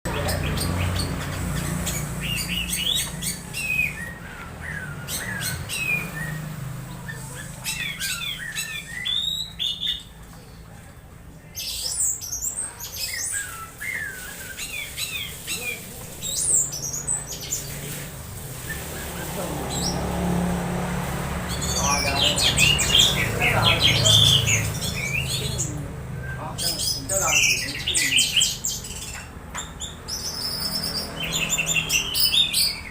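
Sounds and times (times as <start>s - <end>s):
thrush singing: 13.0s - 29.0s.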